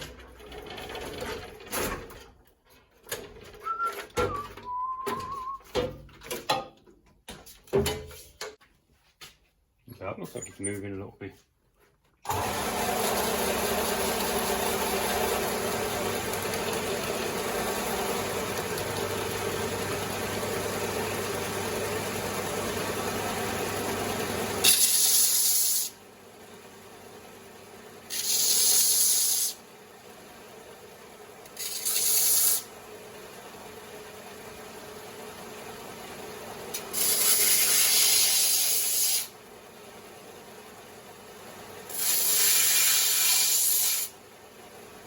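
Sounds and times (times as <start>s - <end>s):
belt sander motor running: 12.3s - 25.9s.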